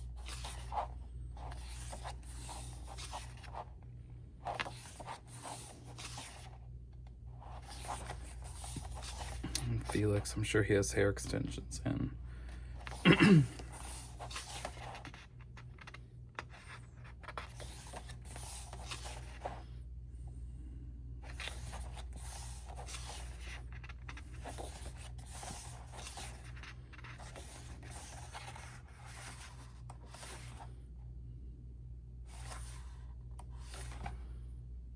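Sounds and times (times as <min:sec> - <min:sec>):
glossy pages being turned: 0:00.0 - 0:03.8, 0:04.4 - 0:06.6, 0:07.4 - 0:10.0, 0:12.8 - 0:19.7, 0:21.2 - 0:30.7, 0:32.3 - 0:34.3
steady low hum: 0:00.0 - 0:34.9.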